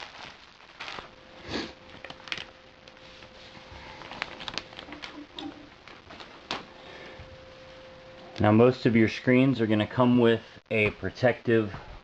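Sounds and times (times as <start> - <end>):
packaging crinkling and rustling: 0.0 - 6.7
faint steady hum: 0.0 - 12.0.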